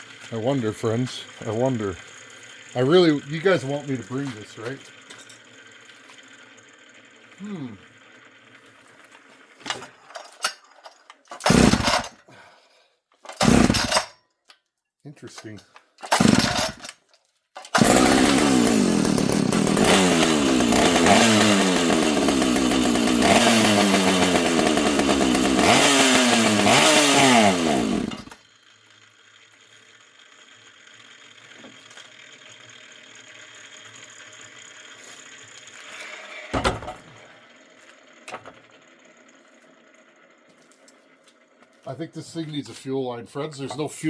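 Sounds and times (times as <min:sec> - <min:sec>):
chainsaw revving: 0:00.4 - 0:04.8, 0:07.2 - 0:08.3, 0:11.4 - 0:12.3, 0:13.3 - 0:14.1, 0:16.0 - 0:17.0, 0:17.6 - 0:28.4
thump: 0:36.5 - 0:37.0.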